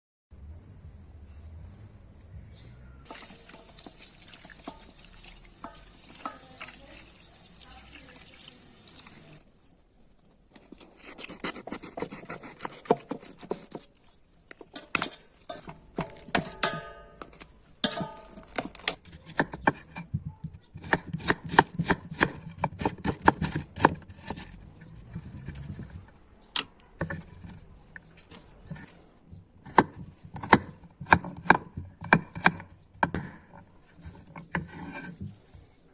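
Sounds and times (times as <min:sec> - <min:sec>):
utensils and dishes clinking: 0:03.0 - 0:07.0, 0:14.7 - 0:19.0.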